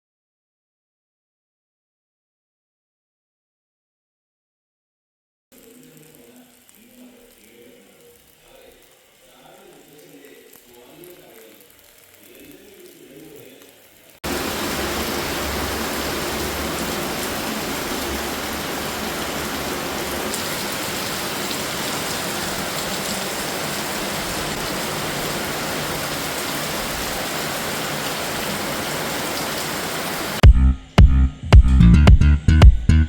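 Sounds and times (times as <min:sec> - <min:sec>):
heavy rain: 0:05.6 - 0:30.4.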